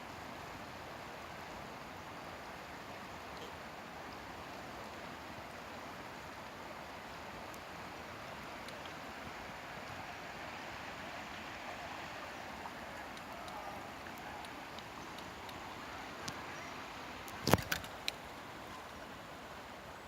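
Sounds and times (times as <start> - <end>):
river water flowing: 0.0 - 20.0
faint ticks: 8.4 - 9.0, 12.9 - 16.4, 17.2 - 18.8.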